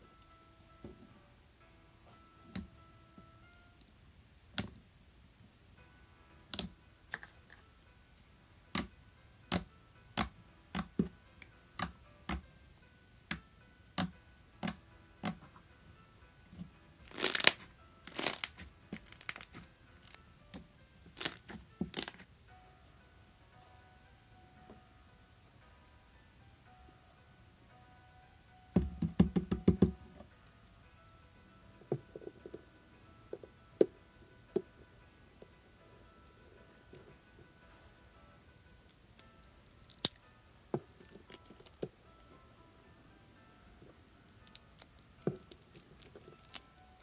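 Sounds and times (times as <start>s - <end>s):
soft background music: 0.0s - 47.0s
slime clicking and popping: 9.5s - 11.0s, 17.1s - 20.1s, 21.1s - 22.2s, 39.2s - 42.4s, 44.3s - 47.0s.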